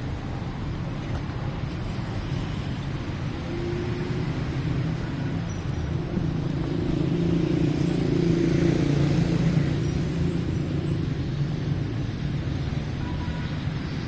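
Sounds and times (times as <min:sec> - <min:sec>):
street traffic: 0:00.0 - 0:14.0
vehicle engine hum passing: 0:03.1 - 0:12.9.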